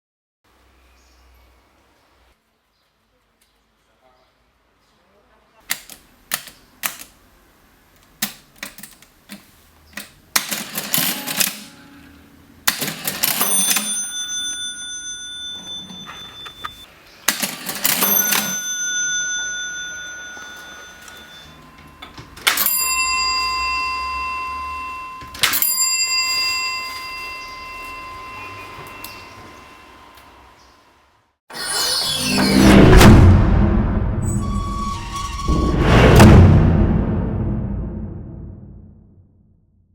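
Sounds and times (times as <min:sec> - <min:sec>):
cash register key clicks: 0:05.7 - 0:07.2, 0:08.1 - 0:23.8
cash register mechanism cranking: 0:10.0 - 0:29.6
cash register bell ringing: 0:10.4 - 0:30.5
lower-pitched bell struck: 0:18.4 - 0:30.0.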